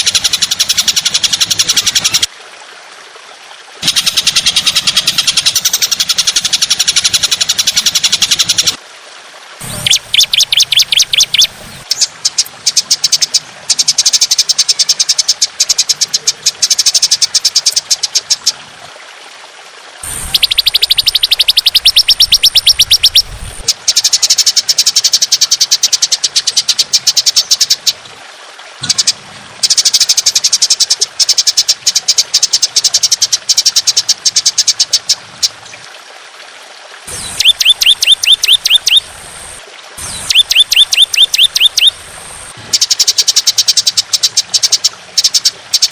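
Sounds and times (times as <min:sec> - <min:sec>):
songbird rattling trills: 0:03.8 - 0:08.8, 0:09.6 - 0:18.5, 0:20.0 - 0:27.9, 0:37.1 - 0:45.9
steady low hiss: 0:20.0 - 0:23.8, 0:37.1 - 0:43.0.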